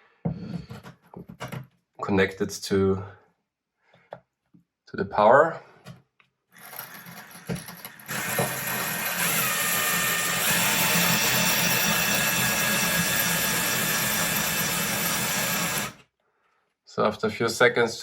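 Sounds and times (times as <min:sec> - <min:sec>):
power drill grinding into tile: 0:06.5 - 0:16.0.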